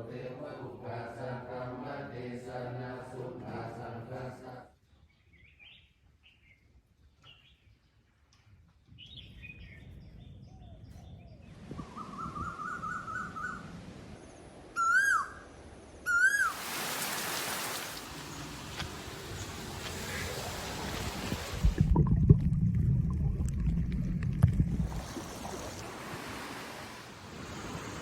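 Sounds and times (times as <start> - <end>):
forest birds calling: 4.8 - 8.2, 14.2 - 16.6.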